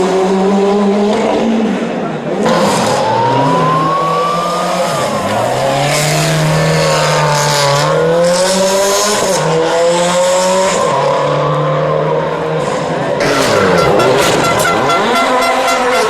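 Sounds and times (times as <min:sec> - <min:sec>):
car engine revving hard: 0:00.0 - 0:16.0.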